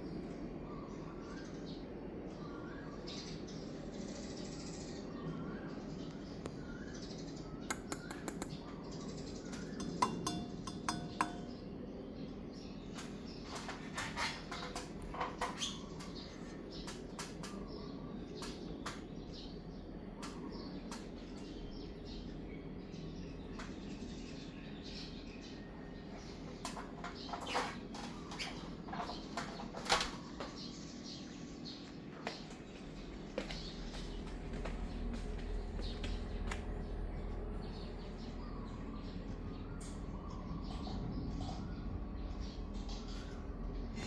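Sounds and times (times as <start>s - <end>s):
bird chirps: 0.6s - 11.8s
ceiling fan humming: 5.0s - 44.0s.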